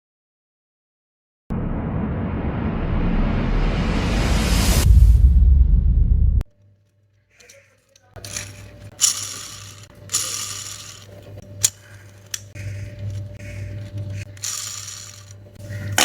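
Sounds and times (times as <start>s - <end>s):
plastic gears rattling and whirring: 6.8s - 16.0s
sharp plastic clicks: 7.4s - 16.0s.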